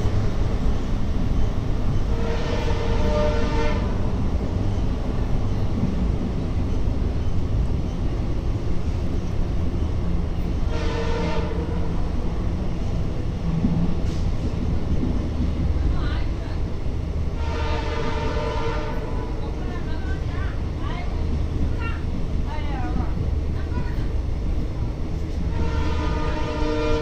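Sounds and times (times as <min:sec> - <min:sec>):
train rumbling: 0:00.0 - 0:27.0
diesel locomotive horn: 0:02.0 - 0:04.2, 0:10.6 - 0:12.3, 0:17.3 - 0:20.3, 0:25.3 - 0:27.0.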